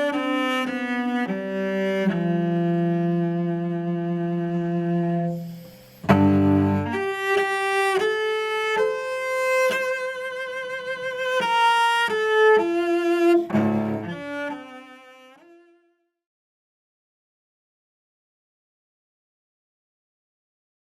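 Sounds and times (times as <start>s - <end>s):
solo cello melody: 0.0s - 16.2s.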